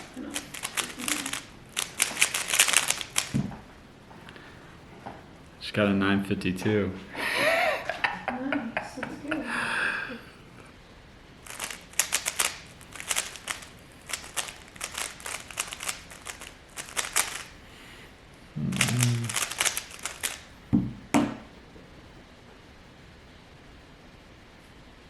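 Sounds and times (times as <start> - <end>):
plastic puzzle cube clicking: 0.0 - 3.4, 11.4 - 17.6, 18.7 - 20.5
sharp knocks: 3.3 - 3.7, 20.7 - 21.5.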